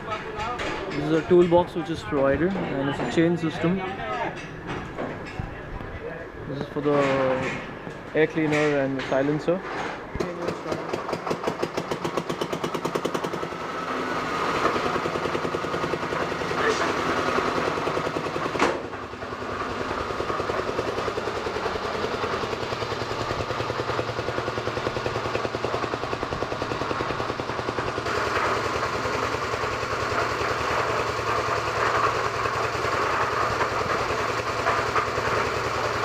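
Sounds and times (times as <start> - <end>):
diesel engine chugging: 10.6 - 36.0.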